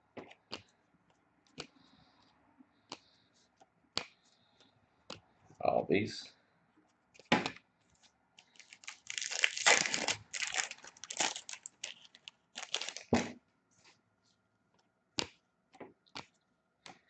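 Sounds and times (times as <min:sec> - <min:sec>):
wrapper tearing and crinkling: 0:08.6 - 0:13.2.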